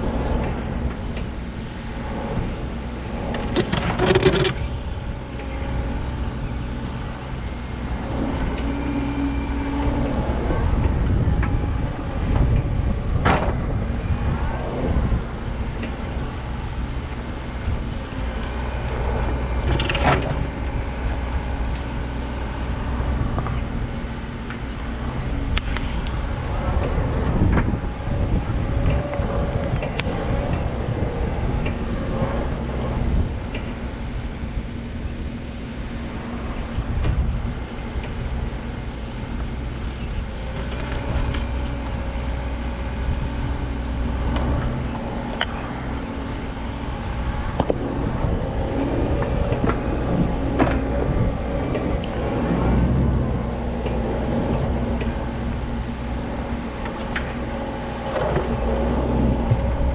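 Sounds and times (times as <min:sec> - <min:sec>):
backhoe diesel engine running: 0:00.0 - 0:59.9
machine knocks and clanks: 0:10.8 - 0:13.9.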